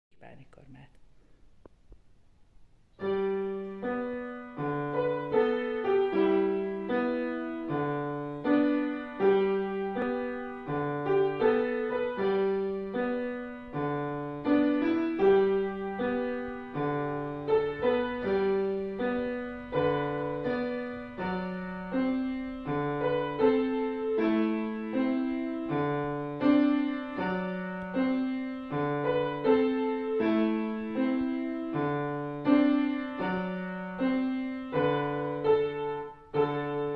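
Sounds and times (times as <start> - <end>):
solo piano music: 2.9 - 36.9.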